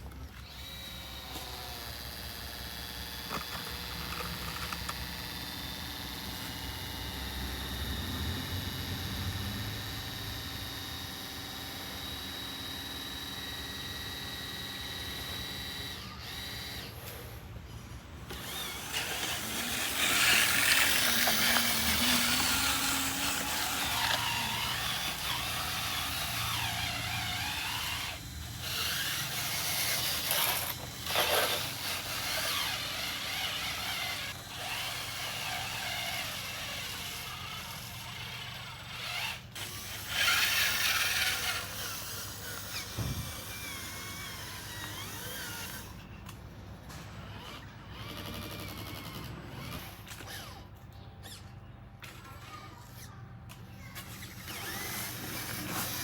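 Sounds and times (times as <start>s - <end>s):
gears grinding: 0.0s - 56.0s
small electric motors whining: 0.0s - 56.0s.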